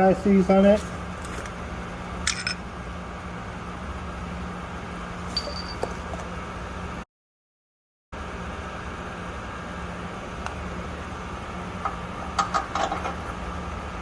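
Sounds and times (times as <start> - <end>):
small metal parts clinking: 2.3 - 2.6
steady hum: 8.2 - 14.0.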